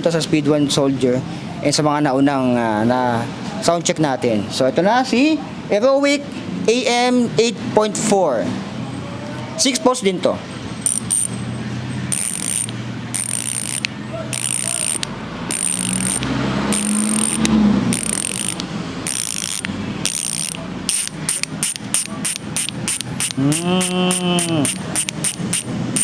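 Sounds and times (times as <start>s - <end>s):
bicycle hub freewheel clicking: 10.8s - 11.4s, 12.1s - 26.0s.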